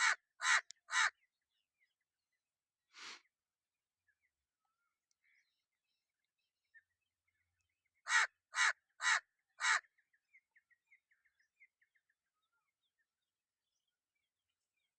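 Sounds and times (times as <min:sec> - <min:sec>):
crow cawing: 0:00.0 - 0:01.2, 0:08.1 - 0:09.9.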